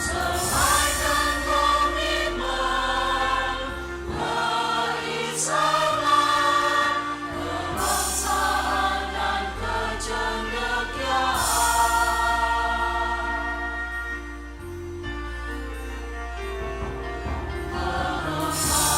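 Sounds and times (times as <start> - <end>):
choir singing a march: 0.0 - 15.2, 16.8 - 18.9
orchestral accompaniment: 0.0 - 18.9.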